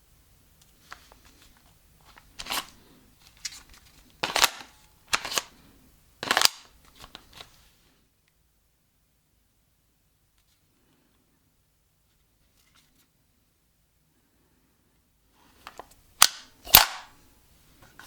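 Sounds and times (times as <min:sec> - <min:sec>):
airsoft magazine clacking: 0:04.2 - 0:05.5, 0:06.2 - 0:06.7, 0:15.7 - 0:17.1.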